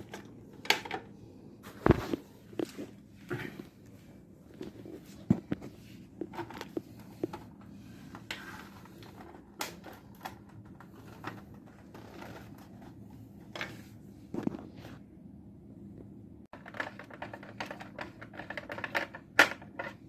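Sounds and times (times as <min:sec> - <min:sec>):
small parts clicking and tapping: 0:16.5 - 0:20.0.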